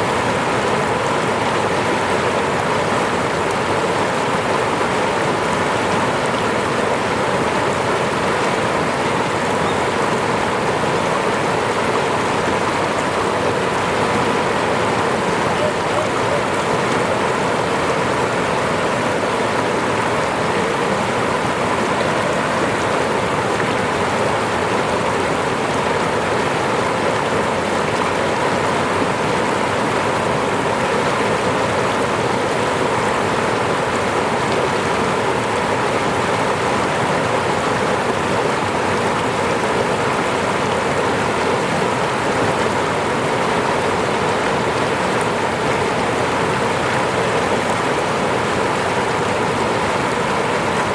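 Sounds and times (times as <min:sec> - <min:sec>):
water rushing: 0:00.0 - 0:50.9.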